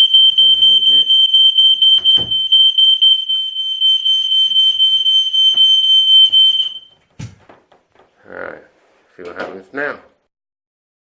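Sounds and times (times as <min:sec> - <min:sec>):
smoke alarm shrill siren: 0:00.0 - 0:07.0.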